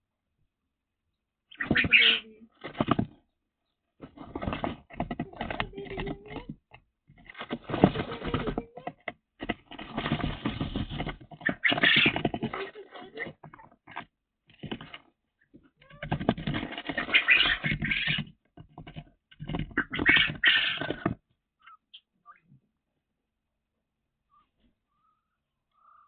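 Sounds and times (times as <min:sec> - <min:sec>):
birds rustling and scratching in cage: 0:01.5 - 0:03.3, 0:03.9 - 0:21.4.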